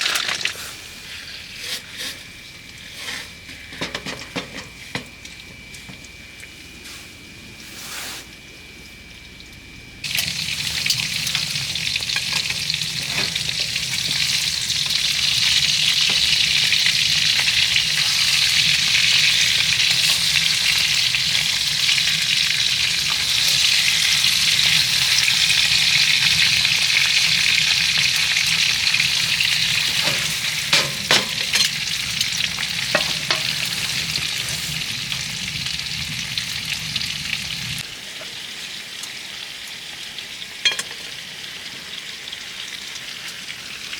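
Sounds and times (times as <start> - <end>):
food sizzling in a hot pan: 10.0 - 43.9.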